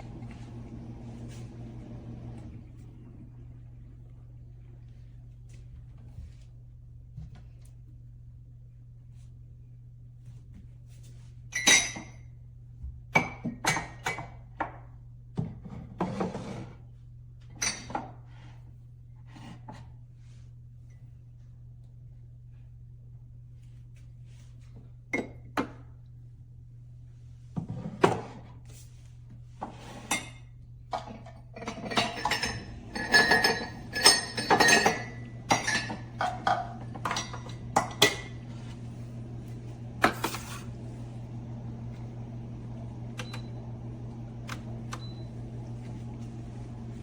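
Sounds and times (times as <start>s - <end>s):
ceramic and metal clinks: 31.7s - 36.0s.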